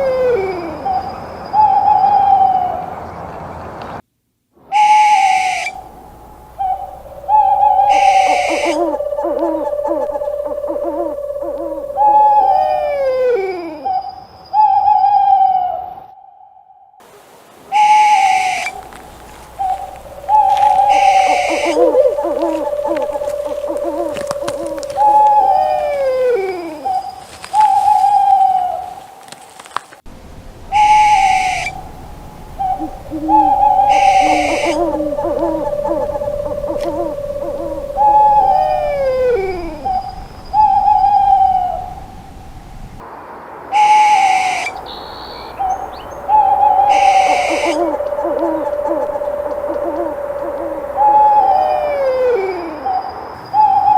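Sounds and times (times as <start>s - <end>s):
owl hooting: 0.0s - 2.9s, 4.7s - 29.3s, 30.3s - 43.0s, 43.8s - 53.9s.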